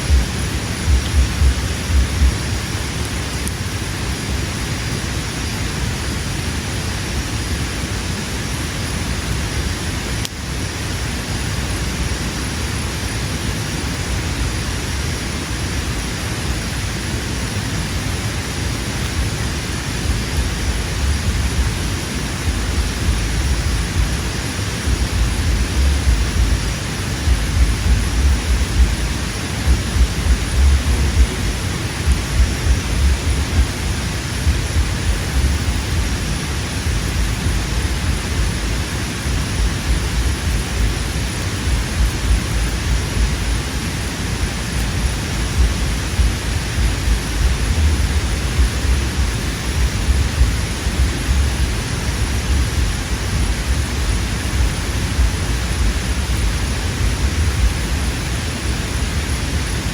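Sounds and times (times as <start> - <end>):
wind buffeting microphone: 0.0 - 3.5, 18.8 - 43.7, 44.4 - 58.3.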